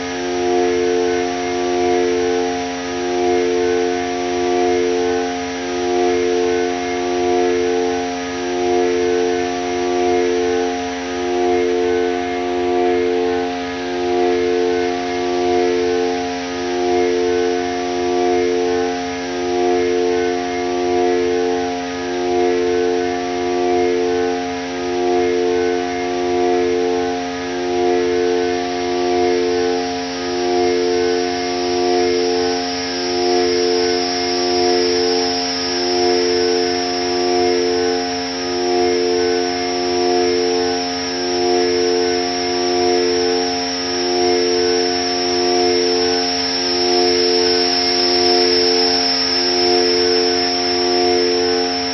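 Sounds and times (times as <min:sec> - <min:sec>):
synthesizer drone: 0:00.0 - 0:51.9
high hiss: 0:28.0 - 0:51.9.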